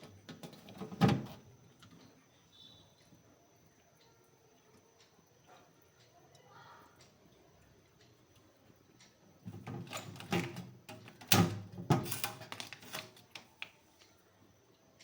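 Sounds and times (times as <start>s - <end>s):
refrigerator parts clunking: 0.0s - 1.4s, 9.5s - 13.2s.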